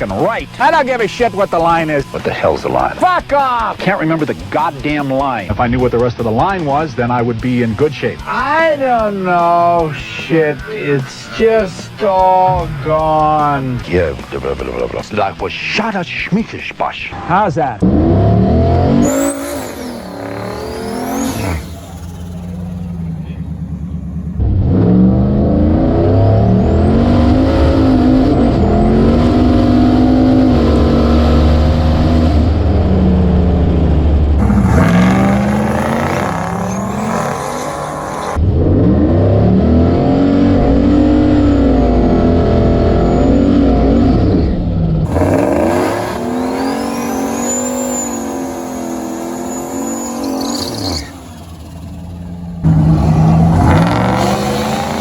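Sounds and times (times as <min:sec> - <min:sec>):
car engine revving: 0:00.0 - 0:15.2, 0:17.8 - 0:55.0
turbo whistle: 0:19.0 - 0:22.9, 0:45.1 - 0:52.2.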